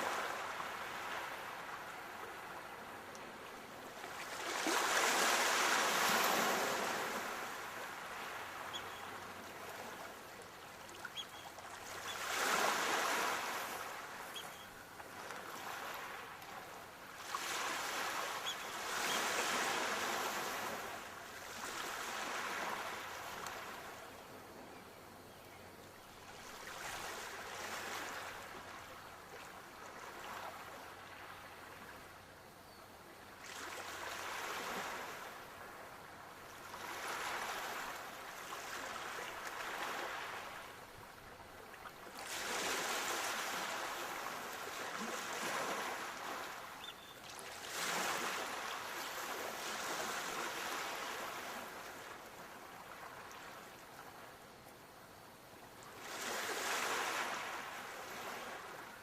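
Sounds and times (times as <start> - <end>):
sea waves breaking: 4.1 - 8.9, 11.0 - 16.4.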